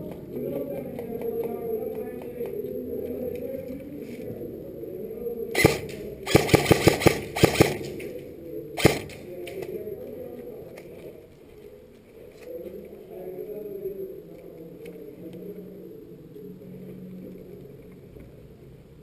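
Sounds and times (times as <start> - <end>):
airsoft gun shots: 5.6 - 8.0, 8.8 - 9.3.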